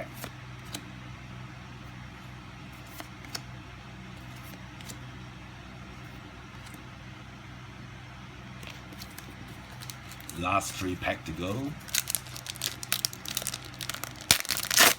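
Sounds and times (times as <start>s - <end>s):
cards clicking and rustling: 0.0s - 0.9s, 2.8s - 3.5s, 4.2s - 5.0s, 6.0s - 6.8s, 8.6s - 14.9s
low background hum: 0.0s - 14.9s.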